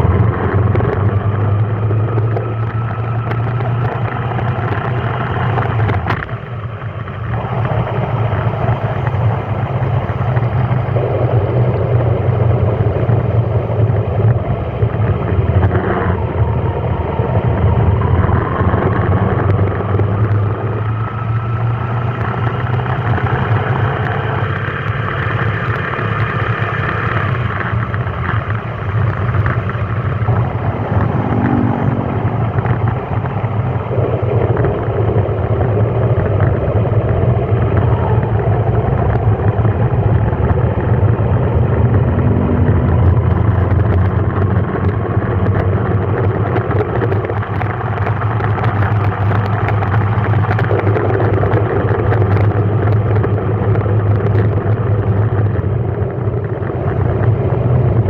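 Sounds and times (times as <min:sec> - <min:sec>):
vehicle engine and road noise: 0:00.0 - 0:58.0.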